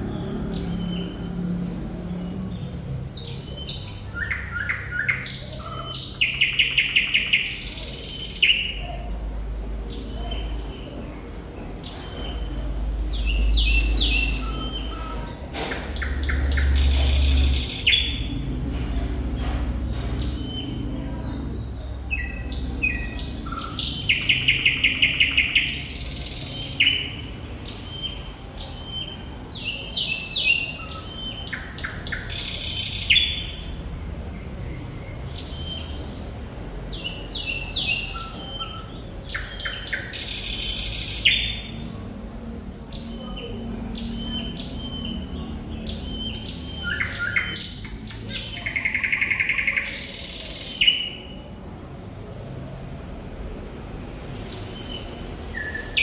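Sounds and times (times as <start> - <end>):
nightingale singing: 2.2 - 11.0, 11.8 - 18.6, 21.8 - 36.3, 36.9 - 42.0, 42.9 - 51.5.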